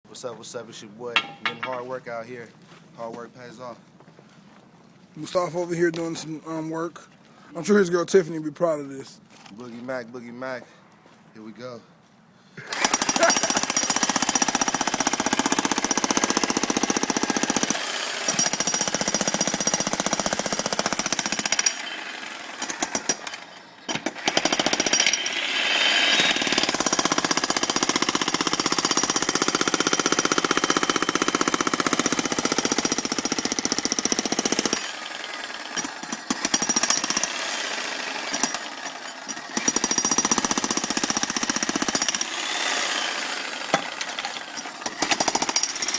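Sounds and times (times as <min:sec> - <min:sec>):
jackhammer breaking concrete: 0:12.7 - 0:45.9.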